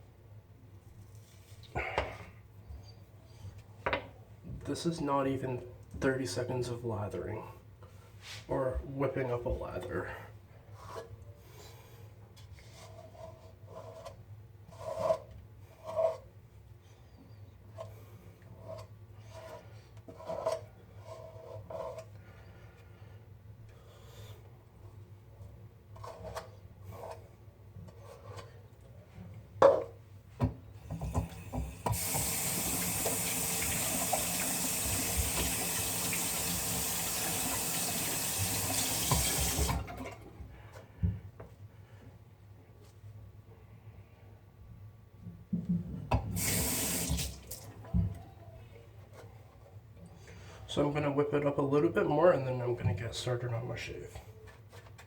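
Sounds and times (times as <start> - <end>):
water tap running: 31.0 - 40.1, 46.4 - 47.7.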